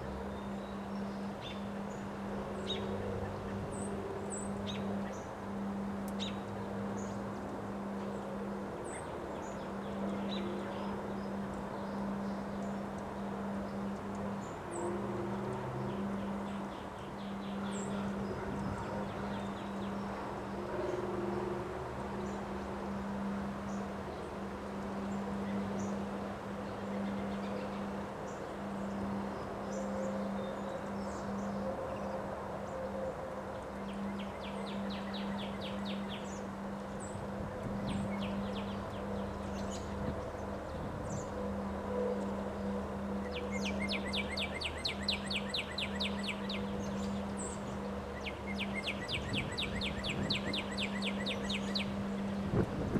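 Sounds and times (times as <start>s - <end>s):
wind blowing: 51.9s - 52.9s.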